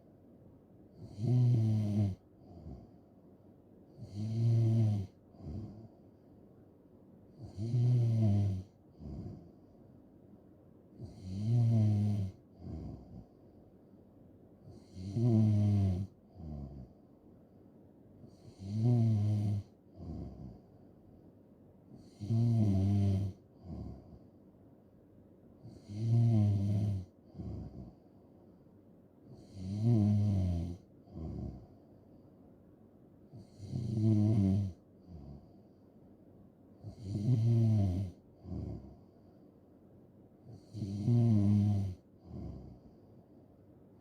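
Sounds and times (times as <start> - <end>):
person snoring: 1.0 - 2.9, 4.0 - 5.9, 7.4 - 9.4, 11.0 - 13.2, 14.7 - 16.9, 18.3 - 20.5, 22.0 - 24.1, 25.7 - 28.0, 29.4 - 31.7, 33.4 - 35.5, 36.8 - 39.0, 40.5 - 42.8.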